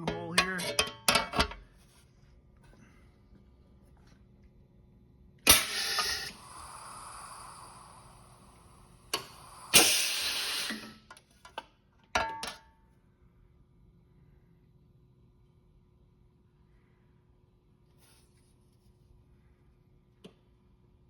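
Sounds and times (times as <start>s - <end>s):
air exhaust burst: 5.5s - 11.1s
pneumatic air blast hiss: 5.5s - 11.1s.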